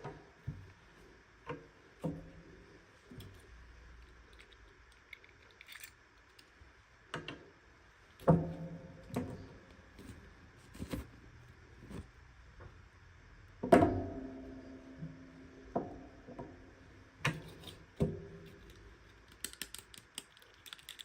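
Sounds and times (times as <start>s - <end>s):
plastic doll parts clicking: 4.3s - 6.6s, 18.6s - 21.0s
hands handling toy packaging: 19.2s - 21.0s.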